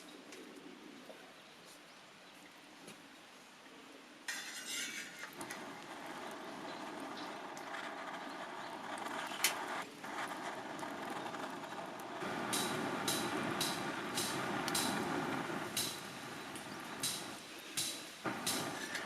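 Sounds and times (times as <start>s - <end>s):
wood fire crackling and popping: 5.3s - 19.0s.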